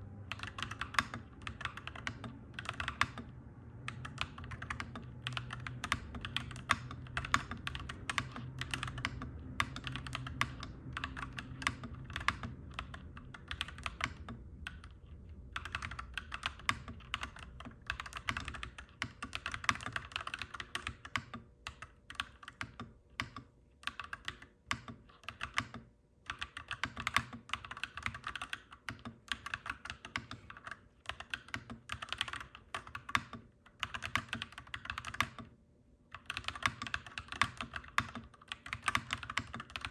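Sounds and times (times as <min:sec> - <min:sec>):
low background rumble: 0:00.0 - 0:20.2
mechanical keyboard typing: 0:00.3 - 0:35.5, 0:36.1 - 0:39.9.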